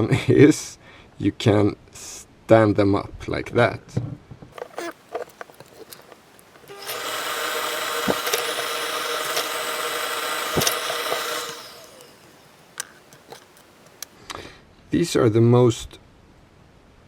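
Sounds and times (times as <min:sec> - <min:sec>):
sharp clicks: 0:04.6 - 0:14.2
small electric motor whining: 0:04.6 - 0:14.2.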